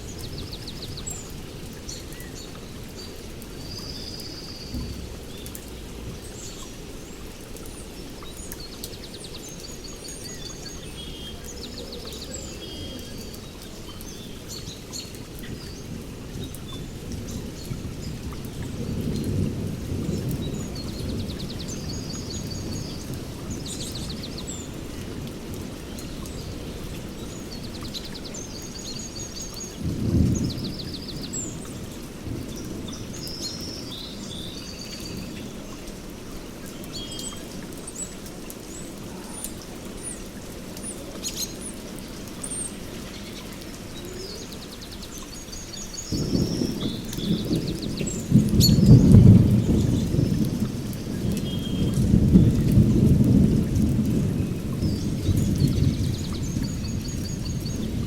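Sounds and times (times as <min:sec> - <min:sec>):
heavy rain on foliage: 0:00.0 - 0:58.0
songbirds chirping: 0:00.0 - 0:58.0
low rolling thunder: 0:16.4 - 0:24.2, 0:29.8 - 0:33.1, 0:46.1 - 0:58.0.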